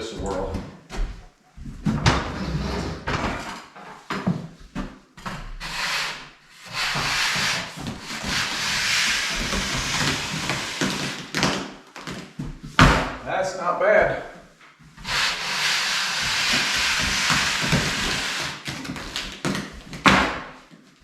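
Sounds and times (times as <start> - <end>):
scraper scraping a ceiling: 2.2 - 3.4, 5.2 - 11.7, 14.9 - 19.8.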